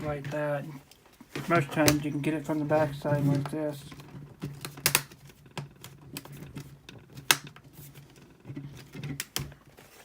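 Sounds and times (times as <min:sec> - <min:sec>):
plastic laptop clicks and taps: 0:04.5 - 0:06.4, 0:07.2 - 0:07.6.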